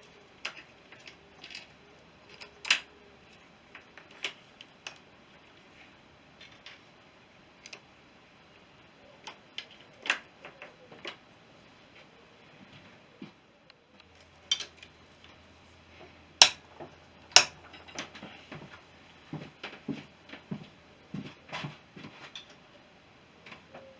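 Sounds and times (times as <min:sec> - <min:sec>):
metal tools clinking: 0:00.4 - 0:05.0, 0:14.2 - 0:14.9, 0:16.4 - 0:18.5.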